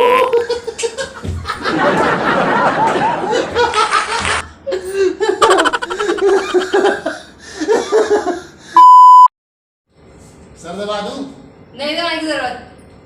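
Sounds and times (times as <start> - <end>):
many people laughing: 0.3 - 8.5.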